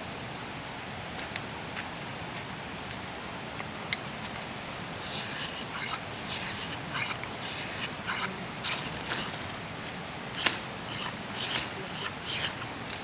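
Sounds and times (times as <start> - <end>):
steady low hiss: 0.0 - 13.0
objects scraping and rustling: 4.1 - 13.0.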